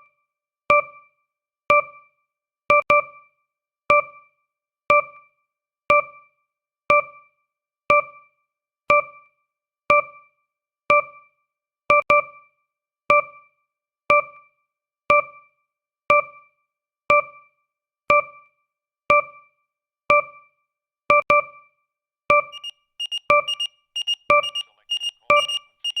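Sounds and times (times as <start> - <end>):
electronic timer ticking: 22.4 - 26.0
rapid high beeps: 22.5 - 26.0.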